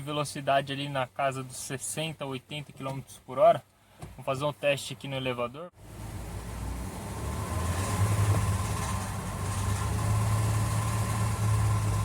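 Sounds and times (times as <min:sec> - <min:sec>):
car drivetrain low hum: 0:05.8 - 0:12.0.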